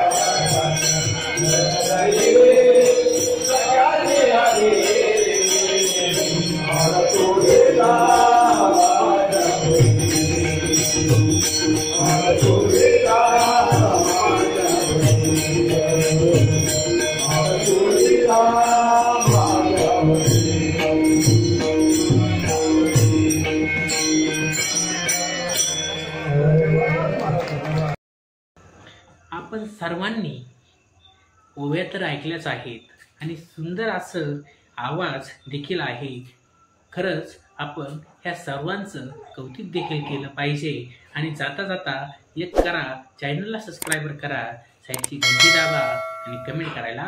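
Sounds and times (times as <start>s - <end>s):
group singing call and response: 0.0s - 22.9s
hand cymbals jingling: 0.0s - 26.0s, 45.0s - 47.0s.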